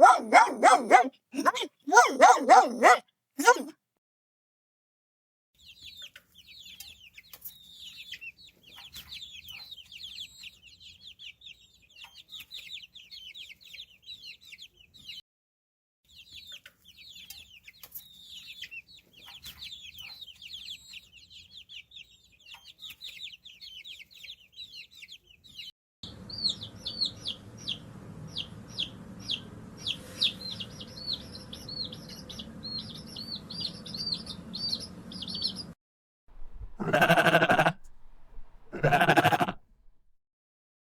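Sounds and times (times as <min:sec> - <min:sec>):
slow high peeps: 0:36.4 - 0:39.6.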